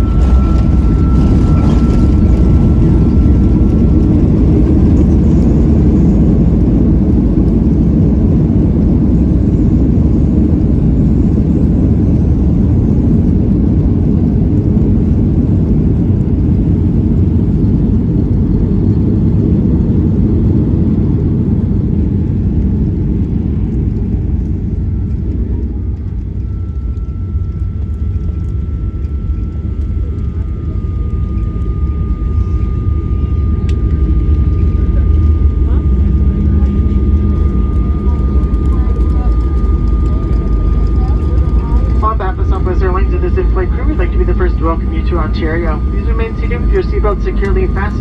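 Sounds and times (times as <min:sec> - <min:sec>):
faint steady whine: 0:00.0 - 0:12.6, 0:22.9 - 0:48.0
jet engine and airflow rumble: 0:00.0 - 0:48.0.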